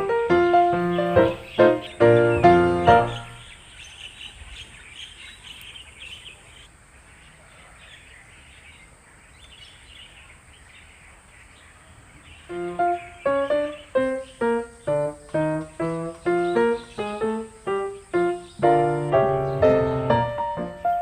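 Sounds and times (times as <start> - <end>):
piano music: 0.0 - 3.5, 12.5 - 21.0
birds chirping: 0.0 - 21.0.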